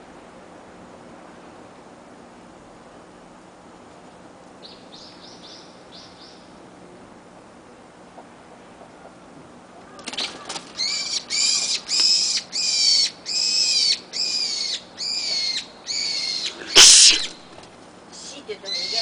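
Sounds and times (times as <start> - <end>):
bird screaming in distress: 10.3 - 17.5, 18.6 - 19.0.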